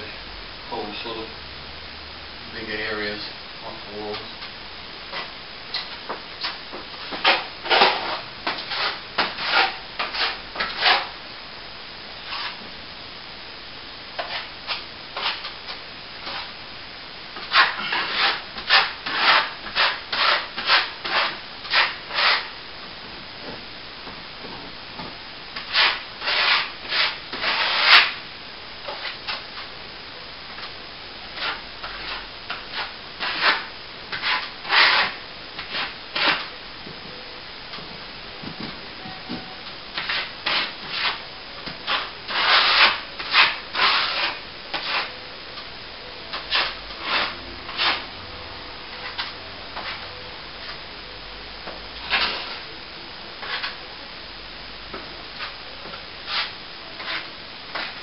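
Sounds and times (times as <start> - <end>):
hand tool rasping on plaster wall: 7.2 - 11.1, 17.4 - 22.5, 25.6 - 28.1, 31.4 - 36.5, 40.0 - 41.2, 41.8 - 45.1, 46.4 - 48.0, 56.3 - 58.0.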